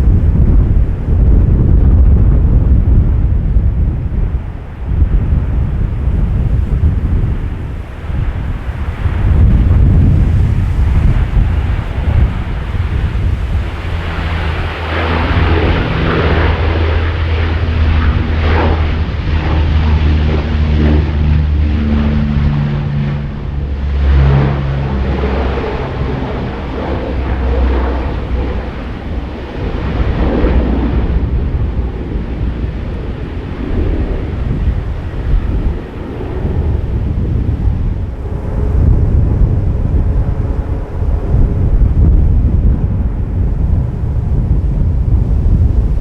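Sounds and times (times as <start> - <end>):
broad rushing noise: 0.0 - 46.0
propeller aircraft engines humming: 0.0 - 46.0
wind buffeting microphone: 0.0 - 46.0.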